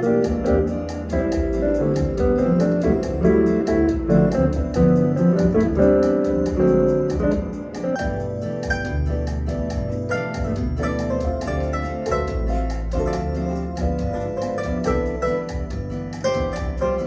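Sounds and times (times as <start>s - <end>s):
bass line: 0.0s - 17.0s
light ticking beat: 0.0s - 17.0s
piano chords: 0.0s - 17.0s.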